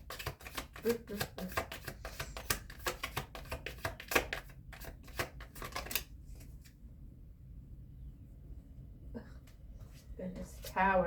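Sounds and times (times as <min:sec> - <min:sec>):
cards being shuffled: 0:00.0 - 0:06.7.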